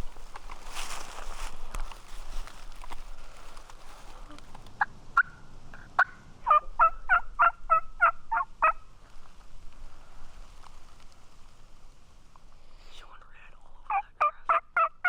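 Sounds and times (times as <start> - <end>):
turkey call yelping: 4.8 - 8.9, 13.9 - 15.0.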